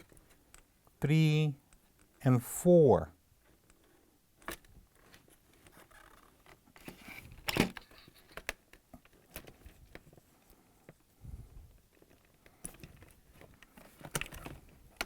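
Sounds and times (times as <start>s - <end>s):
handling rustle: 3.4s - 15.0s.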